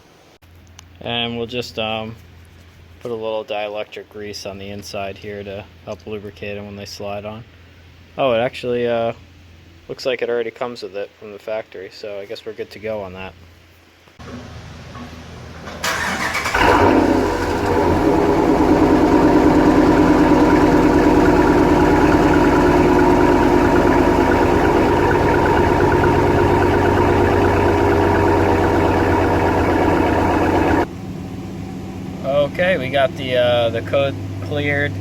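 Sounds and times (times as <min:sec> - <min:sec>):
engine cranking and starting: 0:14.2 - 0:30.9
engine idling: 0:14.2 - 0:35.0.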